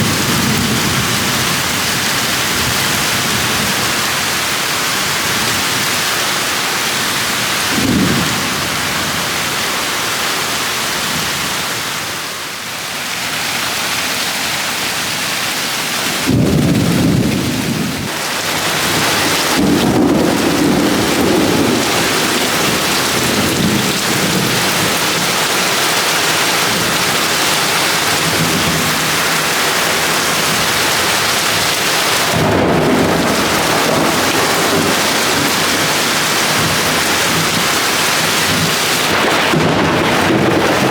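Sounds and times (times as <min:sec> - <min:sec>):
thunder rumbling: 0:00.0 - 0:04.5, 0:07.6 - 0:09.6, 0:16.1 - 0:40.9
heavy rain pouring: 0:00.0 - 0:40.9.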